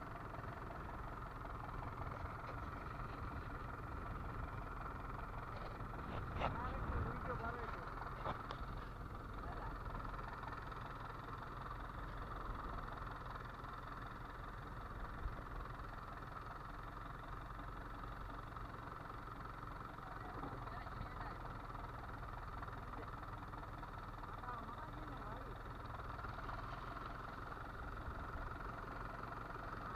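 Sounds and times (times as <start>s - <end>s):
boat engine droning: 0.0s - 29.9s.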